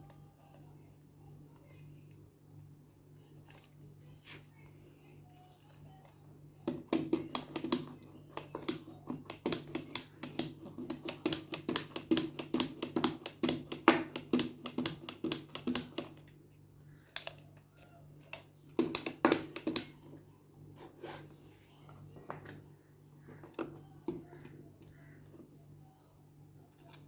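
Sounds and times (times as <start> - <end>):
rapid tapping on hard object: 6.7 - 16.1.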